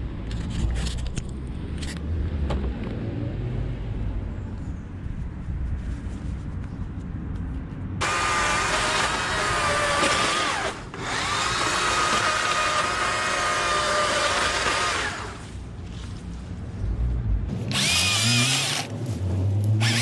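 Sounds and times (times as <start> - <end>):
chainsaw revving: 8.0 - 15.4, 17.7 - 18.9, 19.8 - 20.0.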